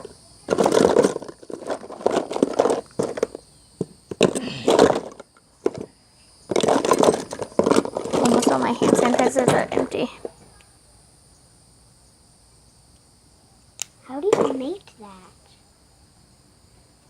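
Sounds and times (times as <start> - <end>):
plastic bottles crinkling: 0.5 - 3.4, 4.1 - 5.9, 6.5 - 9.9.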